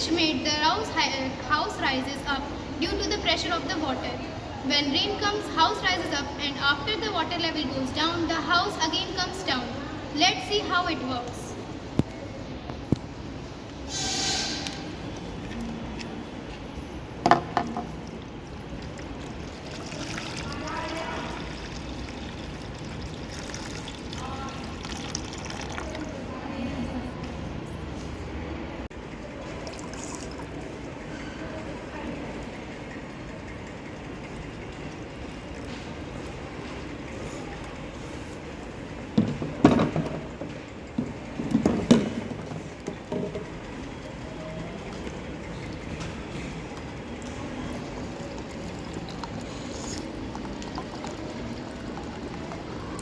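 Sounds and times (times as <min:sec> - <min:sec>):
water pouring: 0:17.6 - 0:26.4, 0:29.4 - 0:31.1, 0:42.3 - 0:53.0
knocks and clatters of container: 0:39.2 - 0:43.6.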